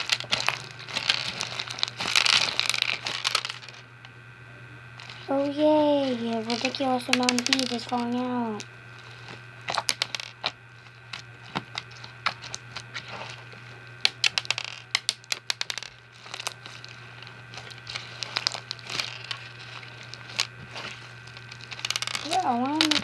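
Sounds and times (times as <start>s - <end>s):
crunchy slime clicking: 6.4s - 8.3s, 9.0s - 13.4s, 14.0s - 16.9s, 17.5s - 23.0s.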